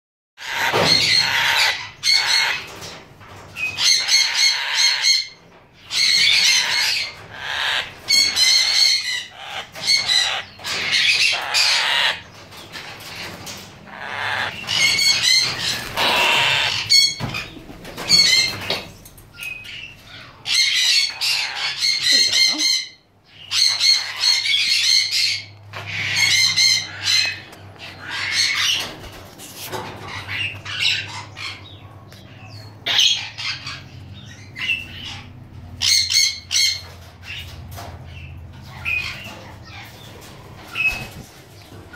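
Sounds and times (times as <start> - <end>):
parrots squawking: 0.4 - 2.8, 3.7 - 12.3, 13.9 - 18.6, 19.6 - 29.0, 30.0 - 31.8, 32.4 - 37.5.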